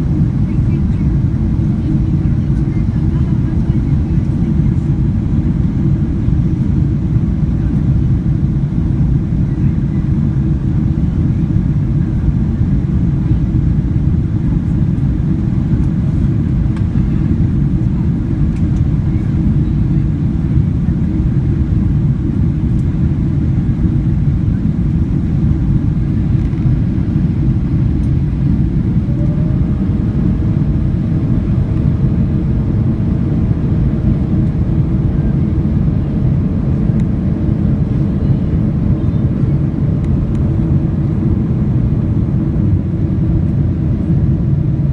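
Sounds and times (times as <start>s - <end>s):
airplane cabin engine rumble: 0.0s - 44.9s
faint higher hum: 14.6s - 43.0s.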